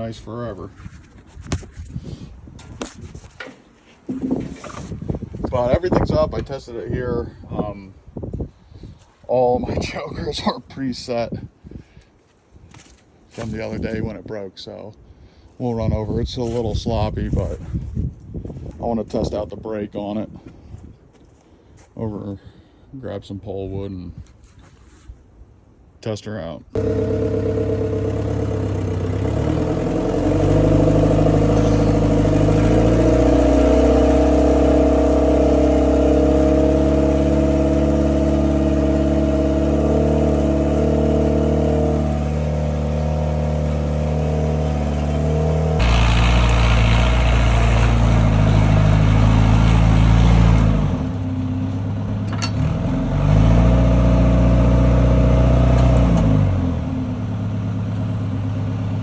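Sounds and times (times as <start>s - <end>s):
diesel engine revving: 26.8s - 59.0s.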